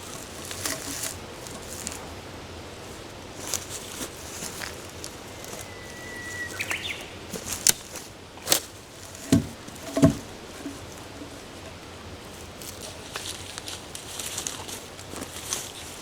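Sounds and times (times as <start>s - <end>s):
whistled bird call: 5.3s - 7.2s
sharp knocks and thuds: 8.5s - 11.4s.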